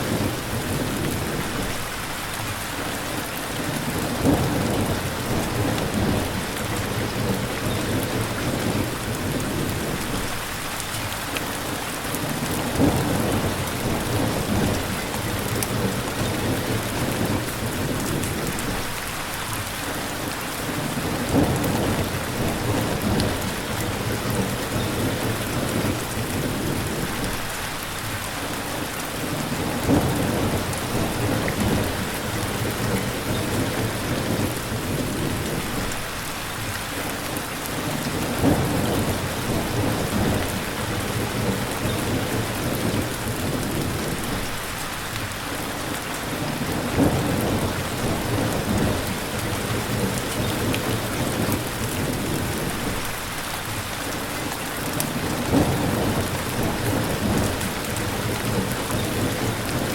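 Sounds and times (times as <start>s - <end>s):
steady rain falling: 0.0s - 59.9s
thunder rumbling: 29.3s - 36.1s, 37.8s - 44.6s, 46.3s - 53.8s, 55.2s - 59.9s.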